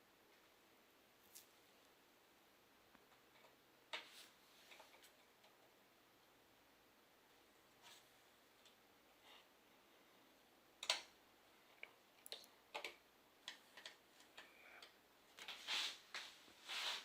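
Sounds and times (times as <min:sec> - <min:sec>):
small clicks and taps: 0:10.8 - 0:11.2, 0:11.8 - 0:15.0.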